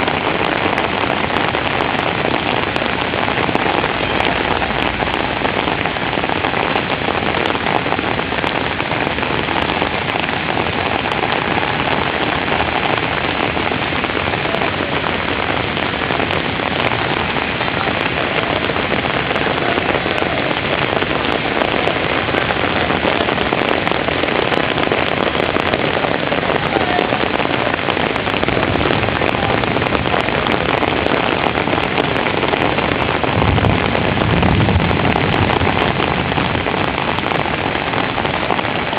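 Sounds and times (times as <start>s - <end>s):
heavy rain on hard surfaces: 0.0s - 38.9s
low rumble: 33.1s - 37.0s.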